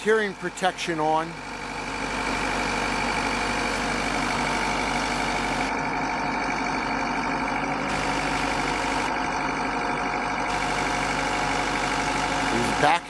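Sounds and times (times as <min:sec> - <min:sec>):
vehicle engine idling: 0:00.0 - 0:13.0
steady high tone: 0:04.4 - 0:09.8.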